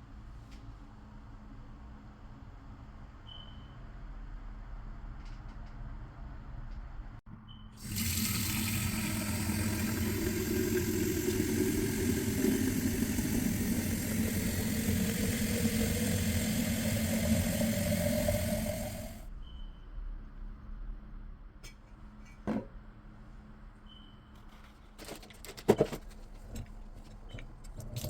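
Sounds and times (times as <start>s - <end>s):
tap water filling a container: 7.8s - 19.2s, 27.7s - 28.0s.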